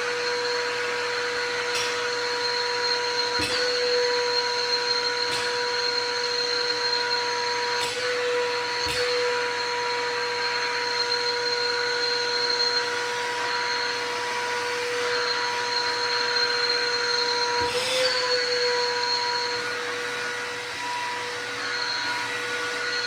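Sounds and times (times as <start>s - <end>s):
shop vacuum running: 0.0s - 23.0s.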